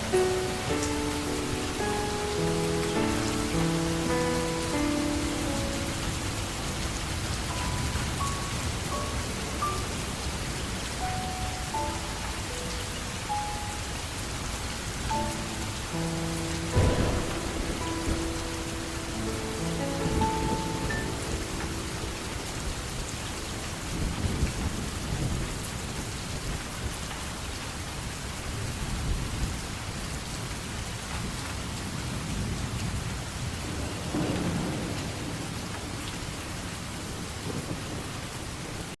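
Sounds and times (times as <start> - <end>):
steady rain: 0.0 - 39.0
low rolls of thunder: 15.0 - 26.9, 31.2 - 39.0.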